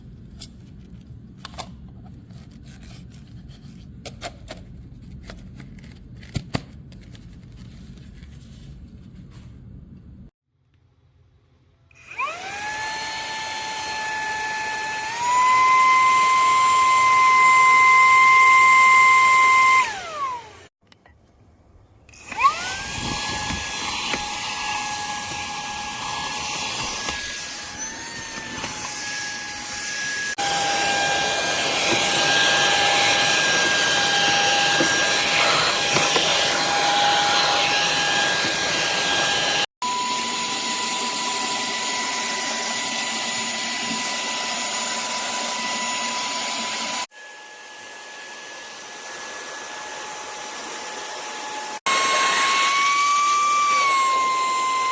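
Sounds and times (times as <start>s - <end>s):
handheld vacuum motor whining: 12.0s - 20.7s, 22.1s - 54.9s.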